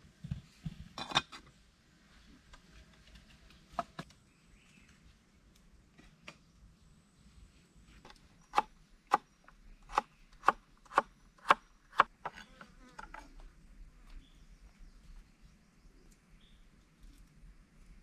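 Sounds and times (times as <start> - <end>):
sharp chopping strikes: 9.9 - 12.1.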